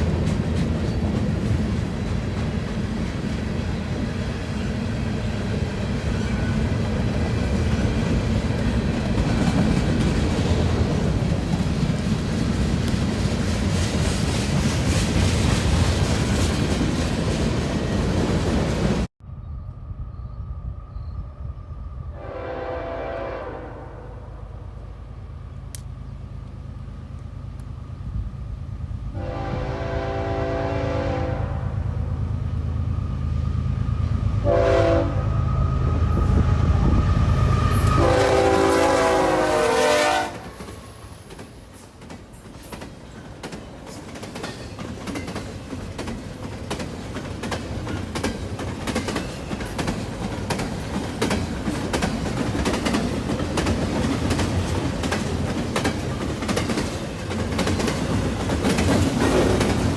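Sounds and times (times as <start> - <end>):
train cars clickety-clack: 0.0 - 19.1, 35.8 - 59.9
train horn blasts: 22.1 - 24.7, 29.1 - 32.2, 34.4 - 40.6
locomotive engine rumble: 24.1 - 39.6.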